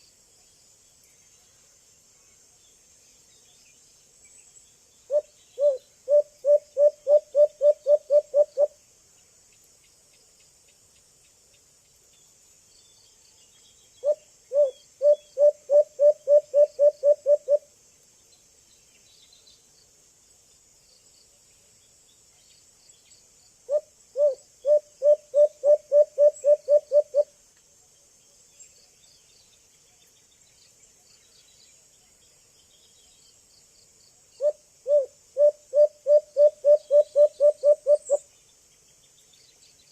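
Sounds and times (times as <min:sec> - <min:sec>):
insects trilling: 0:00.0 - 0:39.9
dove hooting: 0:05.1 - 0:08.7, 0:14.0 - 0:17.7, 0:23.7 - 0:27.3, 0:34.4 - 0:38.2.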